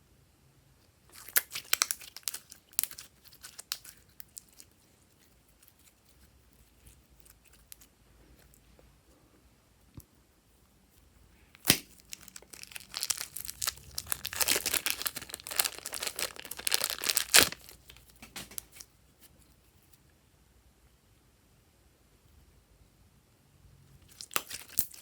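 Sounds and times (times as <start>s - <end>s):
slime crackling and popping: 1.1s - 4.8s, 11.6s - 18.8s, 24.1s - 25.0s.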